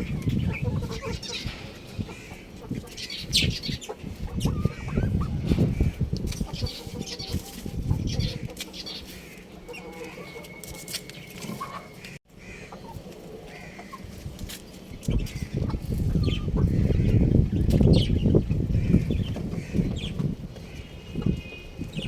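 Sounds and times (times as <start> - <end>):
low thumping and rumbling: 0.0 - 6.7, 15.1 - 21.4
rooster and chickens clucking: 0.0 - 22.0.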